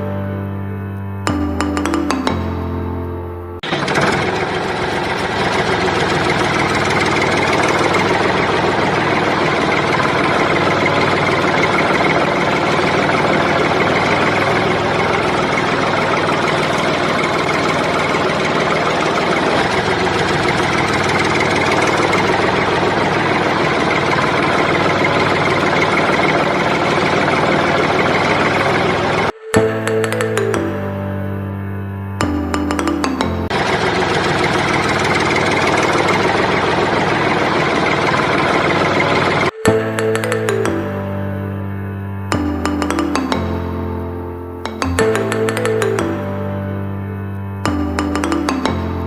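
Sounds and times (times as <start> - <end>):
rough engine running: 3.6 - 29.4, 32.2 - 40.6.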